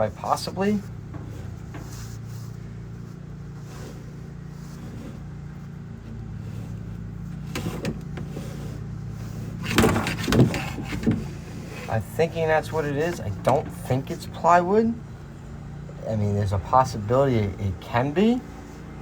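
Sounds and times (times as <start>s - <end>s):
rustling or scraping noises: 0.0s - 13.9s
low machine hum: 0.0s - 19.0s.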